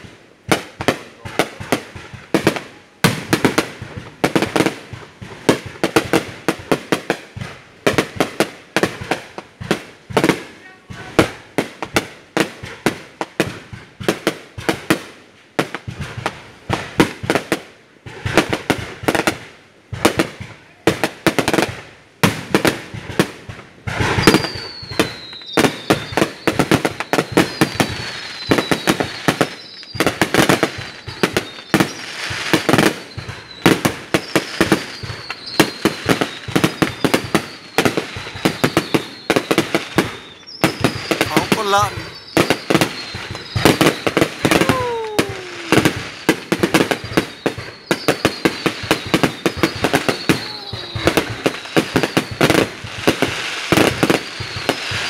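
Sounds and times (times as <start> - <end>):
fireworks bangs and crackles: 0.0 - 55.0
falling firework whistles: 22.2 - 55.0.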